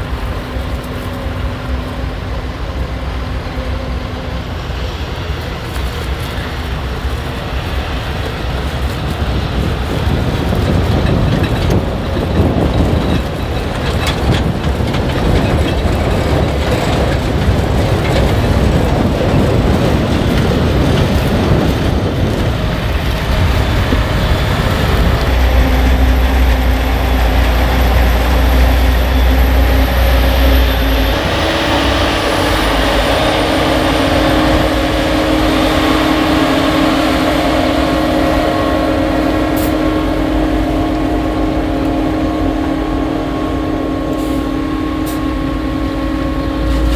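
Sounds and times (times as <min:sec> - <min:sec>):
diesel farm vehicles running: 0:00.0 - 0:46.9.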